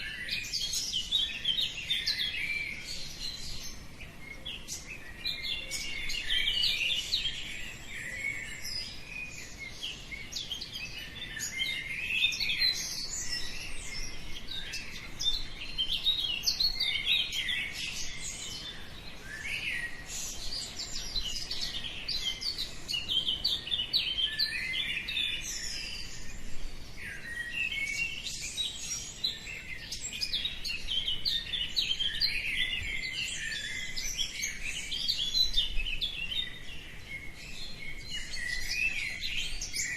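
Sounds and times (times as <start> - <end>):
small birds chirping and singing: 0.0 - 39.9.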